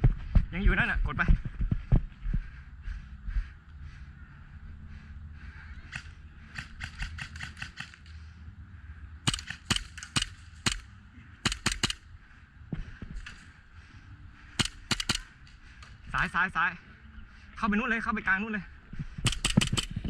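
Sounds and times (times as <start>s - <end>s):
airsoft guns firing: 5.9s - 8.1s, 9.2s - 12.0s, 14.5s - 15.3s, 19.2s - 20.0s.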